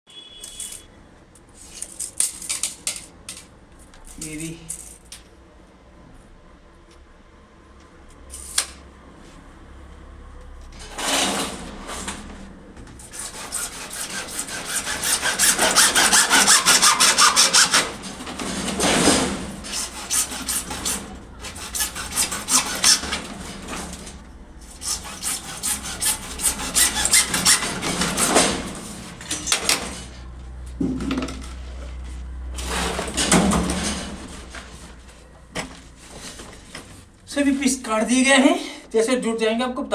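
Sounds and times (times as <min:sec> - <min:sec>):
hand saw cutting pipe: 0:13.1 - 0:30.0.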